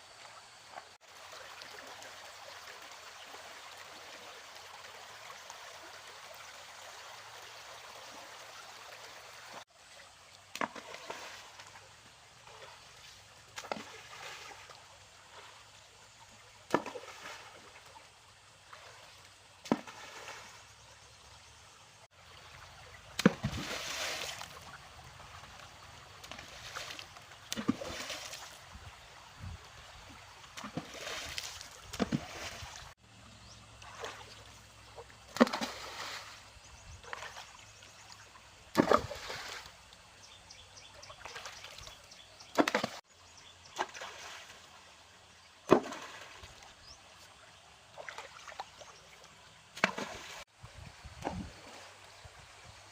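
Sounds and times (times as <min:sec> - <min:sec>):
low watery background: 0:00.0 - 0:52.9
water sloshing and splashing: 0:08.0 - 0:21.0, 0:22.1 - 0:40.2, 0:40.9 - 0:52.8.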